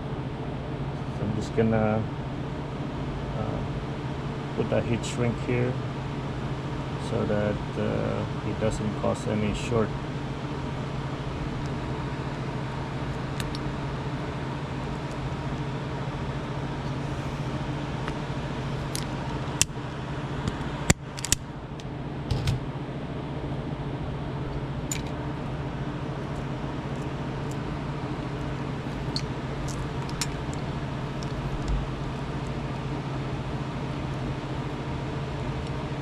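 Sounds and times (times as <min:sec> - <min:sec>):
low mechanical hum: 0:00.0 - 0:36.0.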